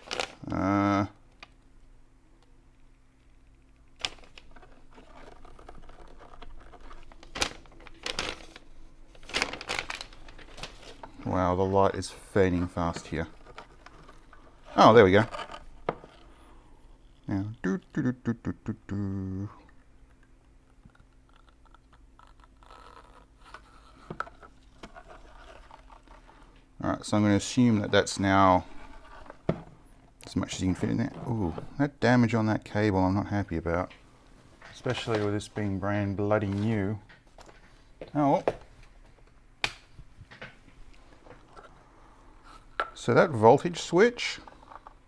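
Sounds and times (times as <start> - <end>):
plastic clicks and scrapes: 3.6 - 8.6, 12.9 - 16.4, 20.1 - 26.7.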